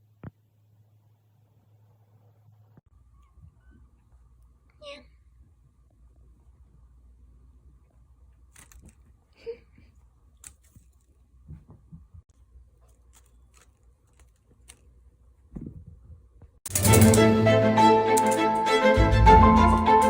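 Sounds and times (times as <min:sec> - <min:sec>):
violin music: 0:16.7 - 0:20.0.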